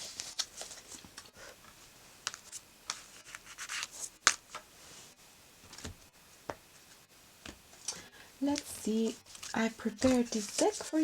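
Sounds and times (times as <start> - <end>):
cards rustling and scraping: 0.0 - 4.7, 7.8 - 11.0.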